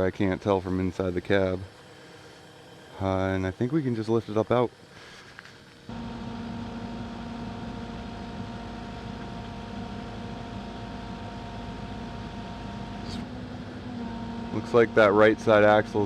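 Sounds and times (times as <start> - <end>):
excavator diesel engine and hydraulics: 4.8 - 16.0.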